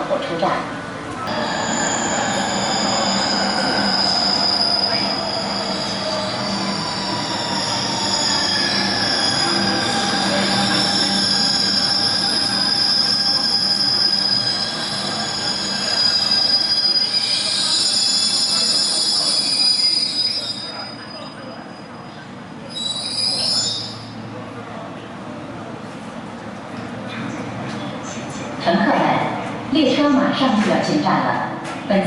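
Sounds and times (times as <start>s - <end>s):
metro train running: 0.0s - 32.0s
wheels squealing on rails: 1.2s - 24.4s.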